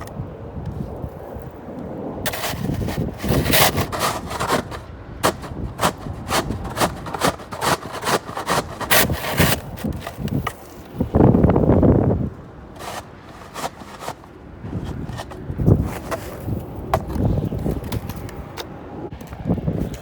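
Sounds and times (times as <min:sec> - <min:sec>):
rough scraping noise: 0:02.3 - 0:10.7, 0:12.8 - 0:16.6
sharp knocks and scrapes: 0:02.3 - 0:10.7, 0:12.8 - 0:18.3.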